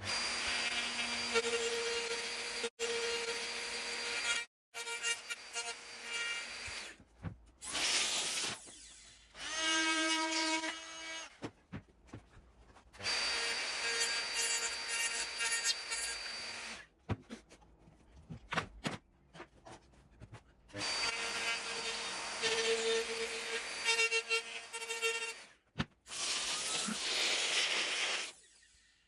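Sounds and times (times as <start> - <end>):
electric router whining: 0.0 - 6.9, 20.8 - 25.4.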